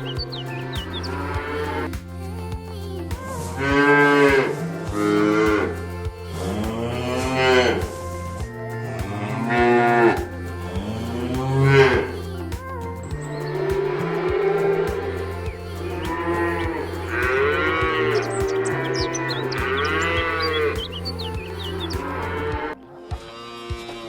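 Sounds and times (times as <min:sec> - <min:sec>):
background music with steady beat: 0:00.0 - 0:24.0
cattle mooing: 0:16.0 - 0:22.6.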